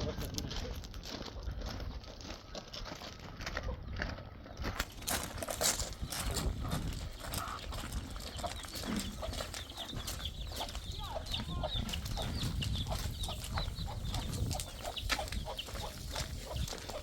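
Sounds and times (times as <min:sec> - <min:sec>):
fowl chirping and peeping: 0:02.2 - 0:17.0.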